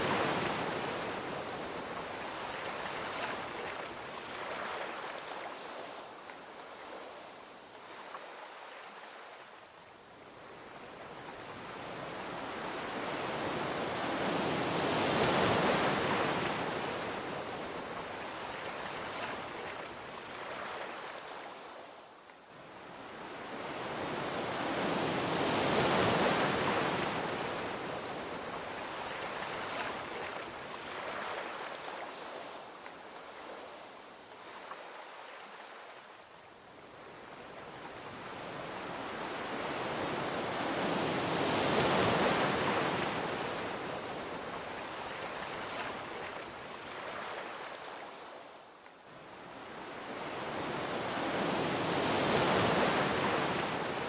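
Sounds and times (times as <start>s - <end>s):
ocean waves washing onto beach: 0.0s - 54.0s.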